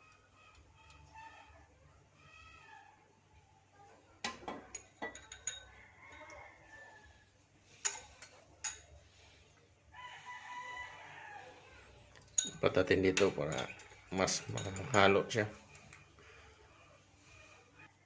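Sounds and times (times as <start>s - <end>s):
spoon clinking against cup: 4.4s - 6.4s, 12.2s - 15.3s.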